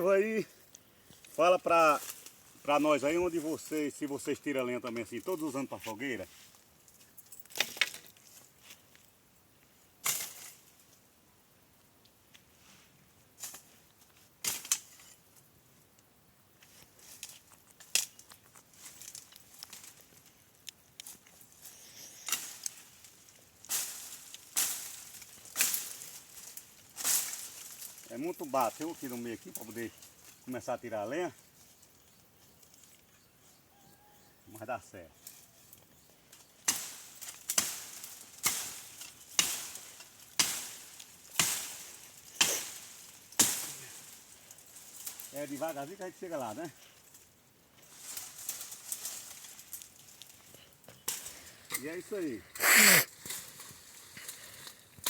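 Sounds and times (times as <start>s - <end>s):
dry brush rustling: 0.0s - 9.1s, 16.6s - 33.0s, 36.4s - 55.0s
twigs snapping: 16.9s - 28.1s, 36.3s - 45.7s, 47.8s - 52.2s.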